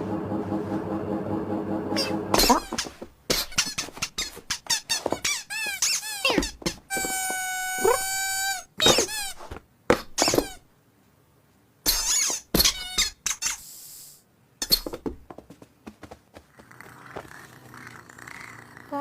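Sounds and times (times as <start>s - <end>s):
faint steady background sound: 2.4s - 19.0s
cat mewing: 6.2s - 9.1s
cat hissing: 16.5s - 19.0s.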